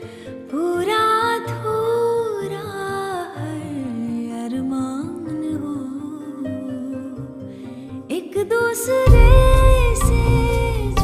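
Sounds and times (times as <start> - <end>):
soft instrumental backing: 0.0 - 11.0
person singing a long note: 9.0 - 11.0.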